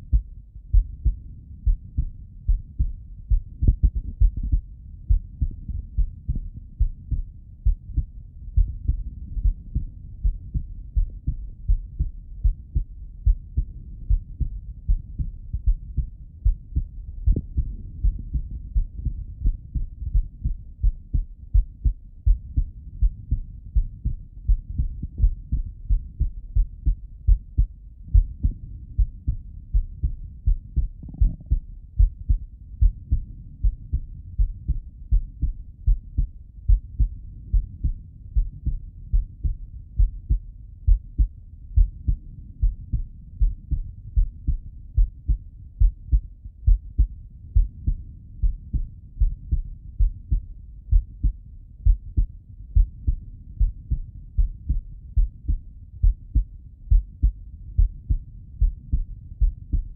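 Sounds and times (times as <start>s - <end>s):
heartbeat thuds: 0.0s - 59.9s.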